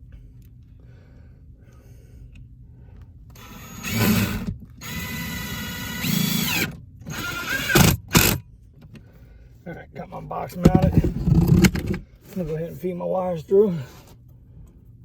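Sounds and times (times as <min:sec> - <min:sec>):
power drill driving screws: 0:03.4 - 0:08.4.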